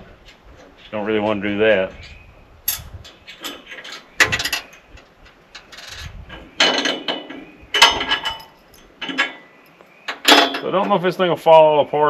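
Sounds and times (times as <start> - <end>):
metal tools clanking: 2.0 - 9.5, 10.1 - 11.1.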